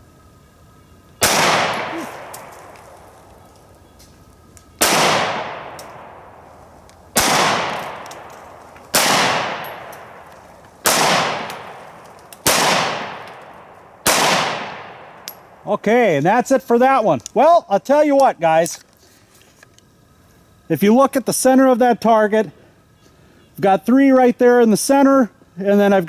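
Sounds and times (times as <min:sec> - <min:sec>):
pistol shots with echo: 0:01.2 - 0:03.3, 0:04.8 - 0:15.5.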